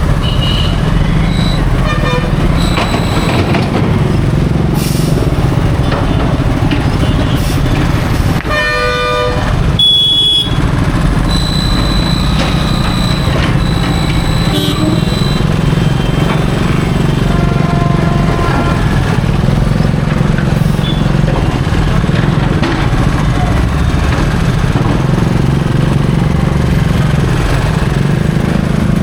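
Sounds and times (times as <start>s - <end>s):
highway traffic rumble: 0.0s - 29.0s
vehicle horn honking: 0.2s - 3.4s, 7.0s - 7.6s, 8.5s - 10.6s, 11.2s - 19.3s
short higher horn blast: 13.9s - 15.4s, 17.1s - 19.2s.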